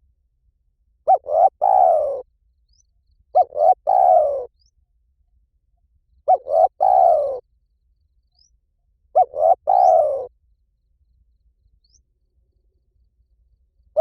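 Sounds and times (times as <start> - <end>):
dove cooing: 1.1 - 2.3, 3.3 - 4.5, 6.3 - 7.4, 9.2 - 10.3.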